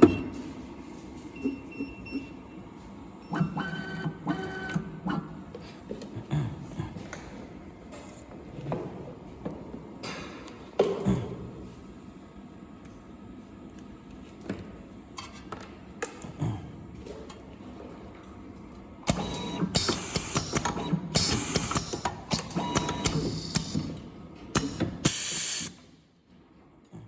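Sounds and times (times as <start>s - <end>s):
machine clicks: 19.0s - 25.2s
pneumatic hissing bursts: 24.6s - 25.8s.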